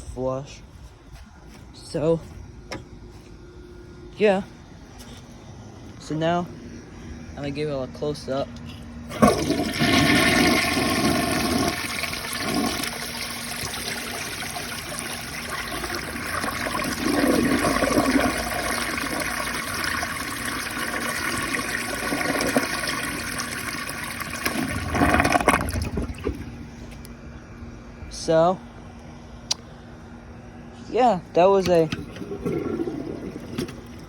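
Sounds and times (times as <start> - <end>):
toilet flushing: 9.1 - 26.5, 31.8 - 34.0.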